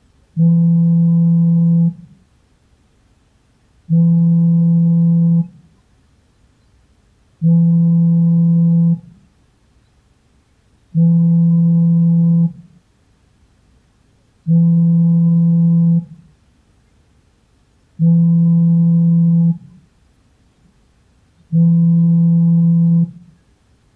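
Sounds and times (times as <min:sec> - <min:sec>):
smartphone vibrating: 0:00.4 - 0:02.0, 0:03.9 - 0:05.6, 0:07.4 - 0:09.1, 0:11.0 - 0:12.6, 0:14.5 - 0:16.2, 0:18.0 - 0:19.7, 0:21.5 - 0:23.2.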